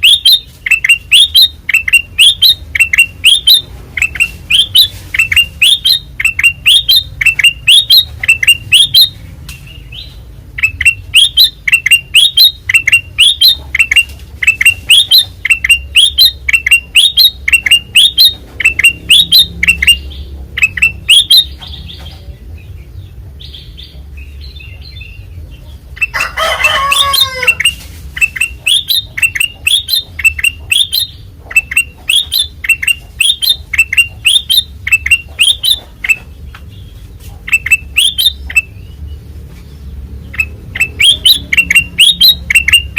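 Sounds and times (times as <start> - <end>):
bird singing whistled notes: 0.0 - 22.0, 37.5 - 39.2, 40.3 - 42.9
harsh bird call: 26.0 - 36.2.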